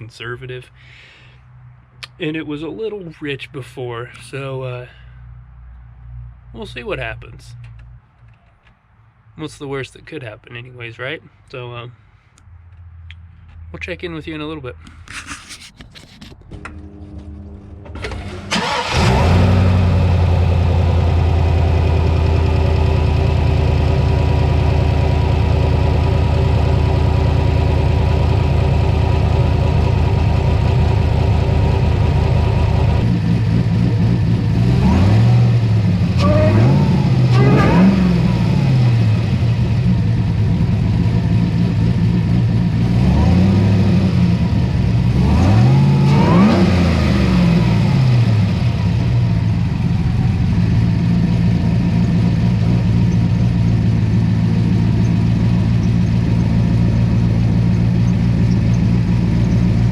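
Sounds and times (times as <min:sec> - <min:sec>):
engine starting and idling: 0:16.5 - 0:32.9
engine revving: 0:16.5 - 0:59.9.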